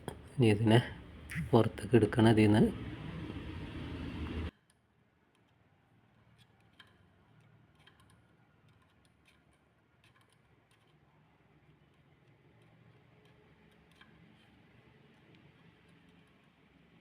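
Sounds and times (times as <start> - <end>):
loud noise cut off: 2.3 - 4.5
small clicks of plastic handled: 4.6 - 16.6.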